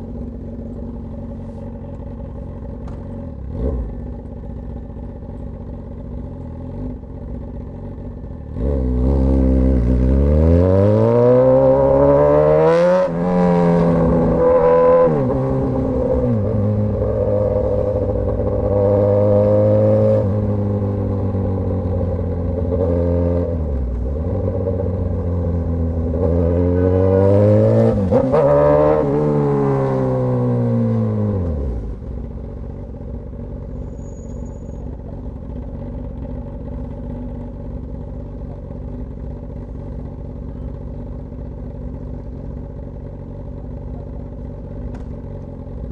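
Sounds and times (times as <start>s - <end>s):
motorcycle engine idling: 0.0s - 8.6s, 20.4s - 22.8s, 31.5s - 45.9s
motorcycle engine revving: 0.0s - 45.9s.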